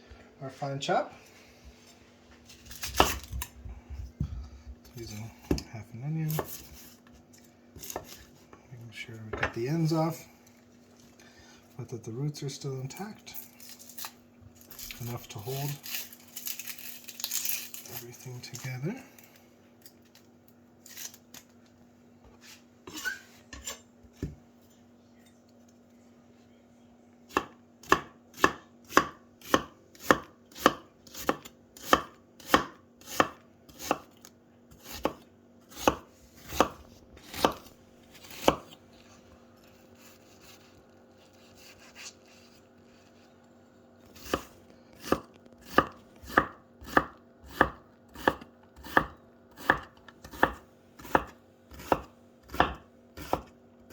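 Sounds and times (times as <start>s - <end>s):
knife chopping on cutting board: 2.7s - 3.5s, 6.3s - 6.9s, 27.3s - 34.1s, 34.7s - 38.8s, 44.2s - 53.5s.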